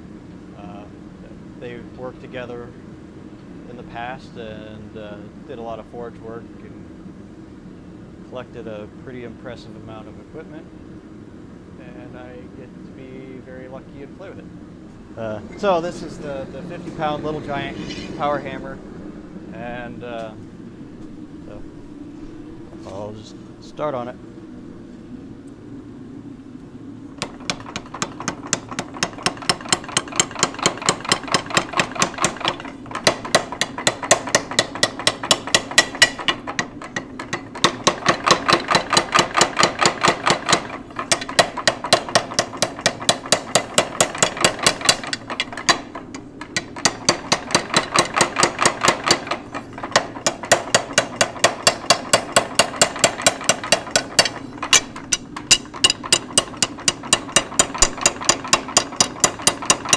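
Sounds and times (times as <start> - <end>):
steady hum: 0.0 - 59.9
power hammer pounding steel: 27.2 - 59.9.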